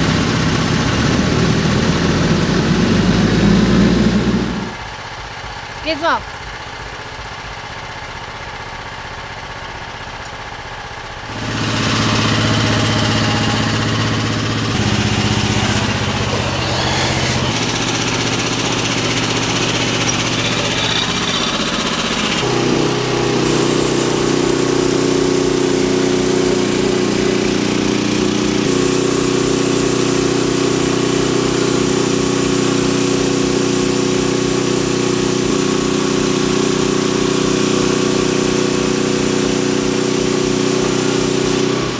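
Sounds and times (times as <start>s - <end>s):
small engine driving a saw: 11.2s - 41.9s.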